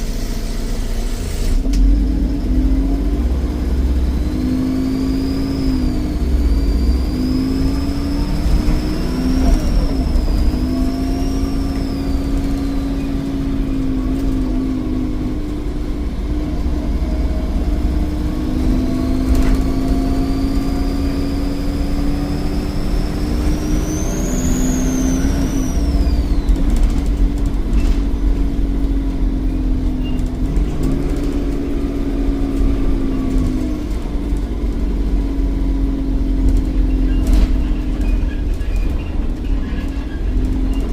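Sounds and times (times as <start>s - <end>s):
bus diesel engine running: 0.0s - 40.9s
turbocharger whistling: 2.6s - 34.3s, 35.1s - 40.9s.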